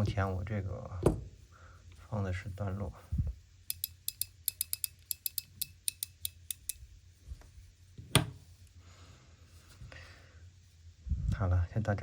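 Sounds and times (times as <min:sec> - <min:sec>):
fidget slider clicking: 0:03.7 - 0:06.8.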